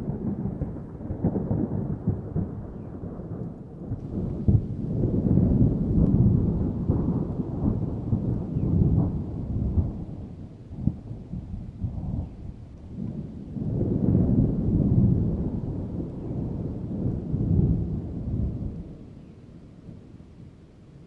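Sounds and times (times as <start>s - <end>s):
rolling thunder: 0.0s - 19.2s.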